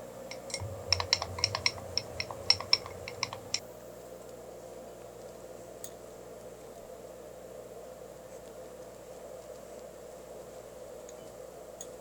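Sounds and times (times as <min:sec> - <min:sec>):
light irregular clicks: 0:00.3 - 0:03.6
low hum: 0:00.5 - 0:03.6.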